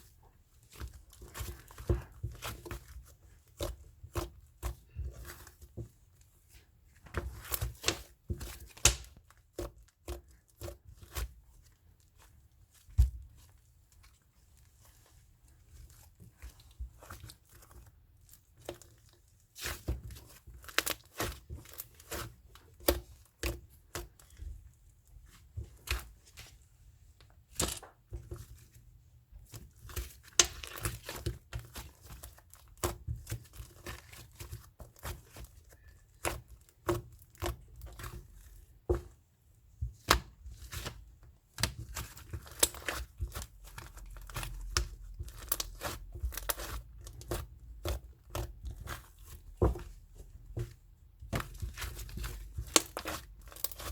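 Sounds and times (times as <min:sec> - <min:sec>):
slime squishing with sticky clicks: 0:06.5 - 0:15.1, 0:29.3 - 0:53.9.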